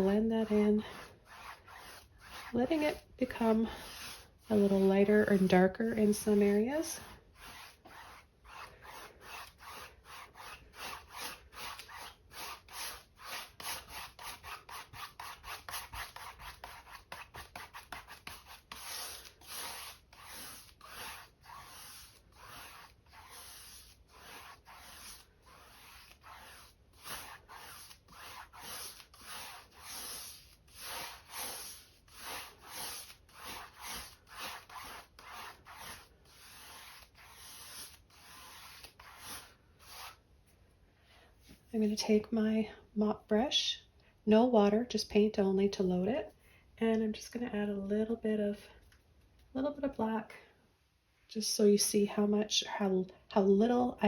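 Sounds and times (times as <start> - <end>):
paintbrush scrubbing on canvas: 0.0 - 40.2.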